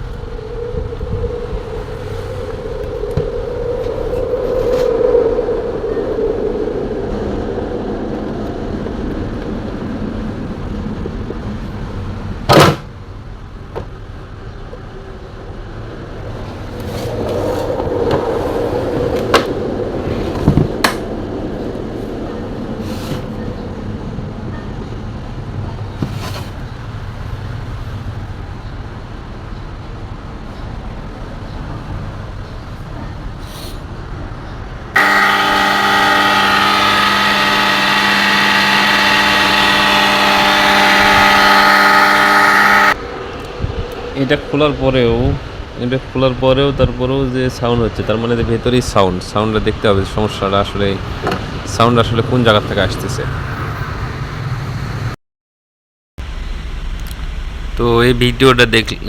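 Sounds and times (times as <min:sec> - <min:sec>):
mixer grinder motor humming: 0:35.0 - 0:43.0.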